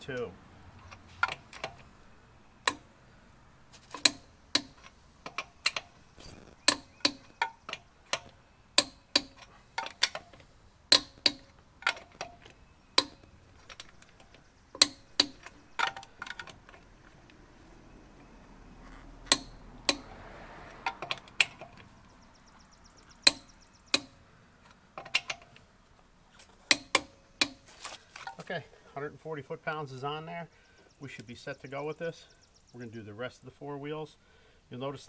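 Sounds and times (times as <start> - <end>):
torque wrench clicking: 3.9 - 16.8, 23.0 - 24.2.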